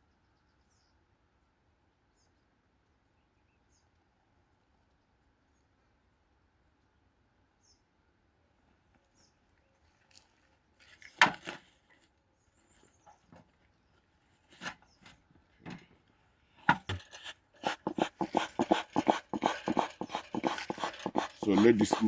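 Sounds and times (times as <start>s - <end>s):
knocks and rustles of handling: 12.8s - 22.0s
bellows puffing: 17.0s - 22.0s.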